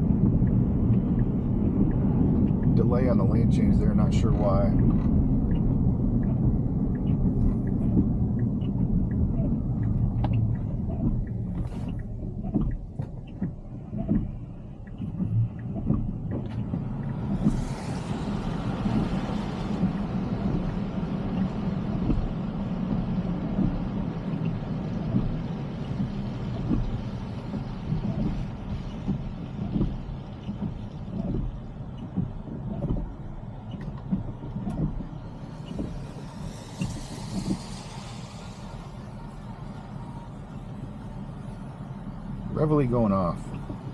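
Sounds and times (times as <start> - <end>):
road and tyre noise: 0.0 - 43.9
hiss: 17.4 - 20.0, 35.4 - 40.3.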